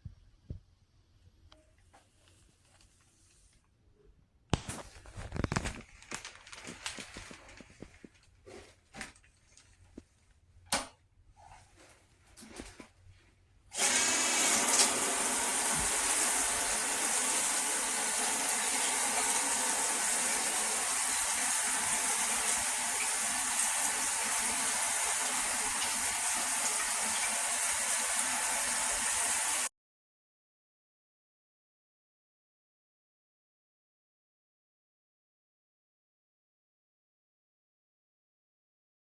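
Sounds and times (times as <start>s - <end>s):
shower head spraying water: 13.7s - 29.7s.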